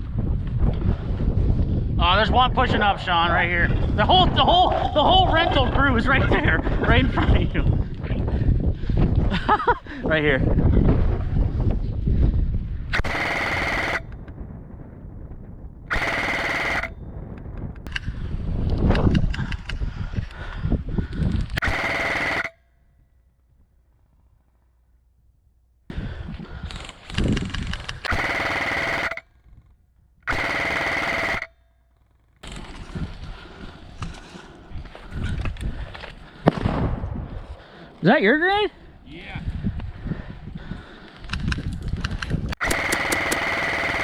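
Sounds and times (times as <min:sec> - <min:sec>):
airsoft rifle rattling bursts: 0:13.0 - 0:14.2, 0:15.9 - 0:17.0, 0:21.6 - 0:22.6, 0:26.7 - 0:29.7, 0:30.3 - 0:32.8, 0:42.6 - 0:44.0
gearbox whine: 0:13.0 - 0:14.2, 0:15.9 - 0:17.0, 0:21.6 - 0:22.6, 0:28.0 - 0:29.3, 0:30.3 - 0:32.4, 0:42.6 - 0:44.0.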